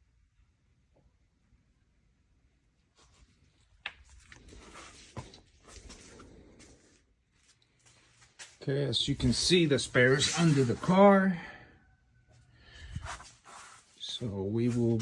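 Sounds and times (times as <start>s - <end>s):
faint rustling and handling: 2.8s - 11.3s, 12.4s - 15.0s.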